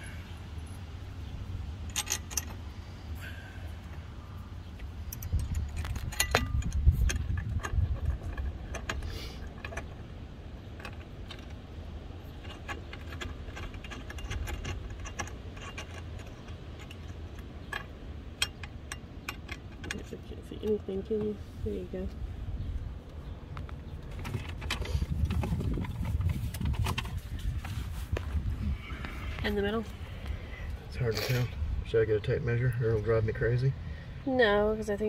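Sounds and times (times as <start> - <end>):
low handling bumps: 3.8 - 33.7
metallic clinks and taps of tools: 5.1 - 9.0.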